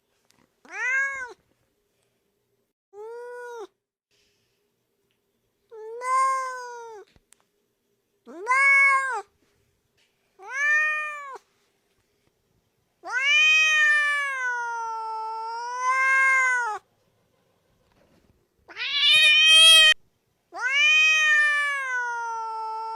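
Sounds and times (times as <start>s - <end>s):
cat meowing: 0.6s - 1.4s, 8.3s - 9.3s, 10.4s - 11.4s, 13.0s - 16.8s, 18.7s - 22.9s.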